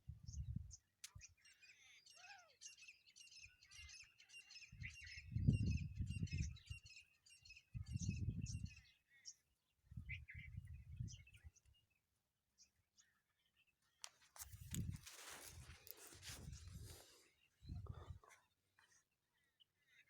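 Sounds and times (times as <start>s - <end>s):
small birds chirping: 0.2s - 20.0s.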